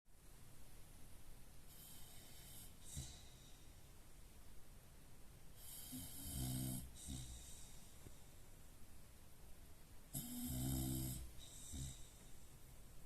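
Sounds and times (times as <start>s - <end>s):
dog snoring with whistling hiss: 1.7s - 3.7s, 5.5s - 8.0s, 10.1s - 12.4s.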